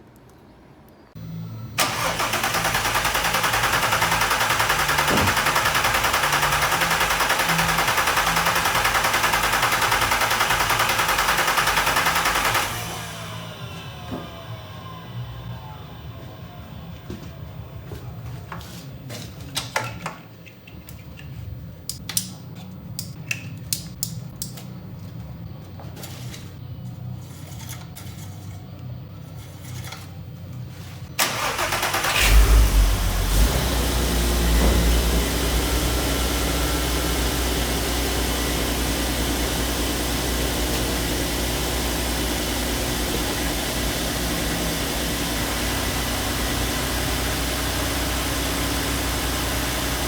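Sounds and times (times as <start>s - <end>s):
car engine idling: 1.2s - 18.6s, 31.2s - 50.0s.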